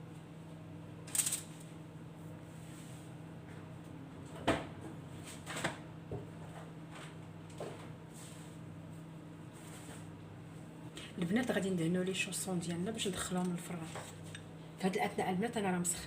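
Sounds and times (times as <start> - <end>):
faint steady hum: 5.9 - 16.0.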